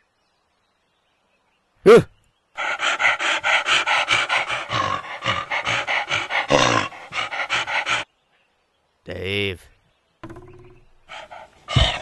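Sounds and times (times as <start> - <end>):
cartoon dog panting: 2.6 - 8.1, 11.1 - 12.0.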